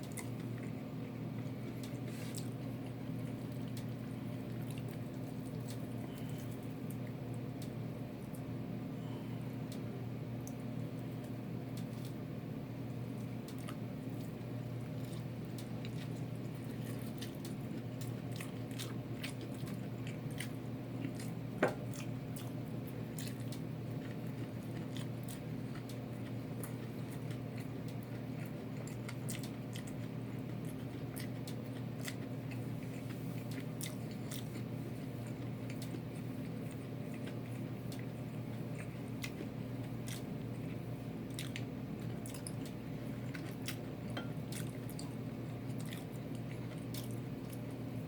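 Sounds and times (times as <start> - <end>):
person chewing fried chicken: 0.0 - 48.0
steady low hum: 0.0 - 48.0
wet mouth clicks and crunches: 26.6 - 34.6.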